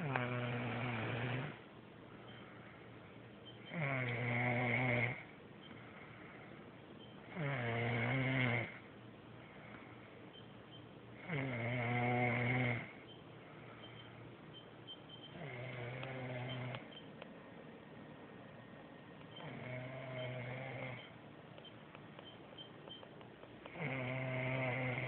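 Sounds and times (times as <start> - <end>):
person snoring: 0.0 - 1.6, 3.7 - 5.3, 7.3 - 8.8, 11.2 - 13.0, 19.4 - 21.1, 23.7 - 25.0.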